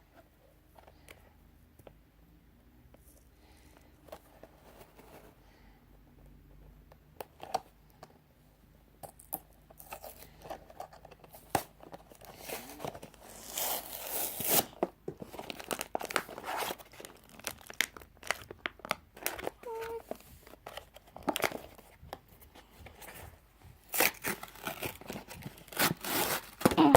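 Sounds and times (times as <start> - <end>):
toy packaging tearing and crinkling: 9.7 - 22.0, 22.9 - 26.9.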